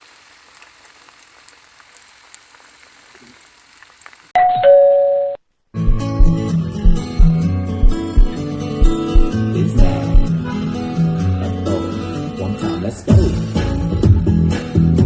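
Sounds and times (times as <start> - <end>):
faint hiss with crackles: 0.0 - 4.4
two-note doorbell chime: 4.4 - 5.4
guitar-led song: 5.8 - 15.0.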